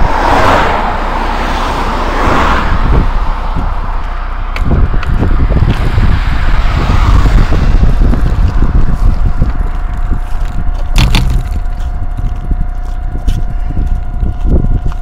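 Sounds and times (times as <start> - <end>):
wind rumbling on microphone: 0.0 - 15.0
thin steady whine: 2.7 - 15.0
bicycle knocks and rattles: 4.5 - 6.2, 7.8 - 15.0.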